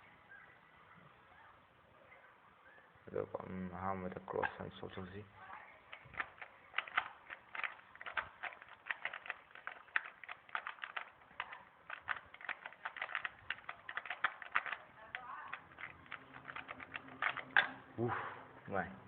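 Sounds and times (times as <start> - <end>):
puzzle cube layers clicking: 5.9 - 17.7.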